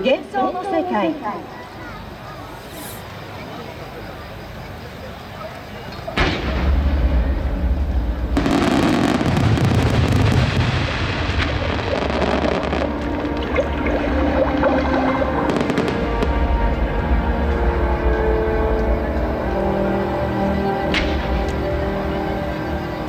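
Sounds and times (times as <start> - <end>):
fireworks crackling: 6.0 - 23.0
fireworks booming: 6.1 - 20.0, 20.8 - 23.0
music: 6.2 - 23.0.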